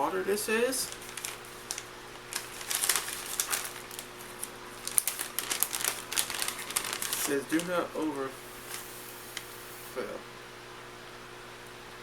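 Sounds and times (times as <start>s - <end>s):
plastic packaging crinkling: 0.8s - 10.0s.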